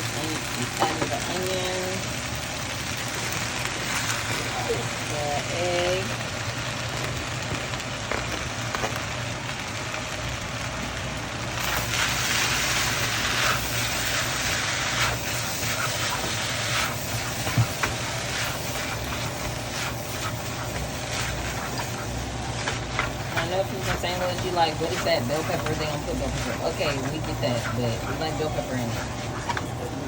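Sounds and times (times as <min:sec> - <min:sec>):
constant low hum: 0:00.0 - 0:30.0
rice sizzling in a pan: 0:00.0 - 0:30.0
spatula scraping a pan: 0:11.7 - 0:29.8.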